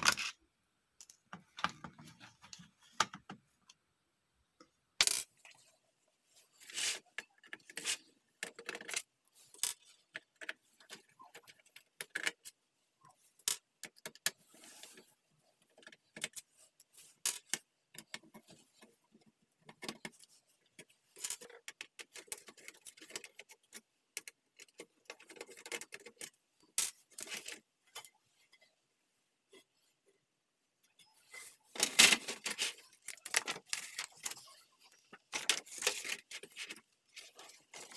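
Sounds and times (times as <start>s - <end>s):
plastic keyboard parts clicking: 21.2s - 27.6s, 31.8s - 34.5s.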